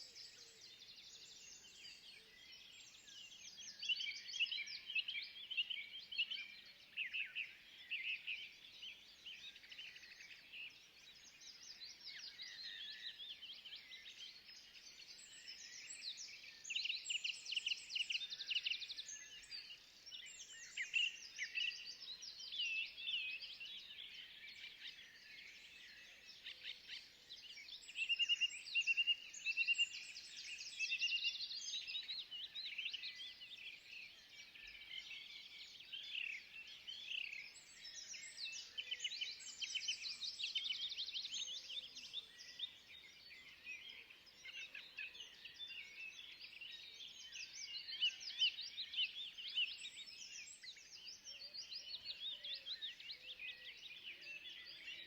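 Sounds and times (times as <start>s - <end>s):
songbirds chirping and trilling: 0.0s - 55.0s.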